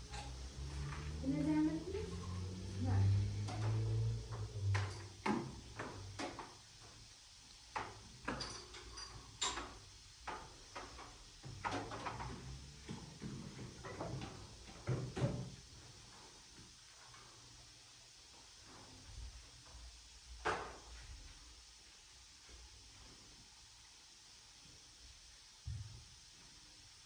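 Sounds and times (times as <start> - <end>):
objects knocking and clicking: 3.3 - 6.6, 7.7 - 12.6.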